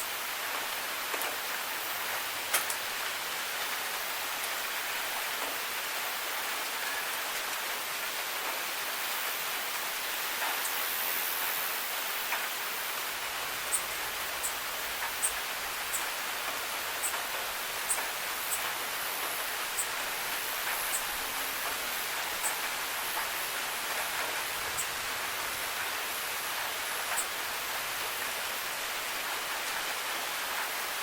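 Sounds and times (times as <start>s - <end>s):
steady rain falling: 0.0s - 31.0s
sharp drip ticks: 13.7s - 25.0s.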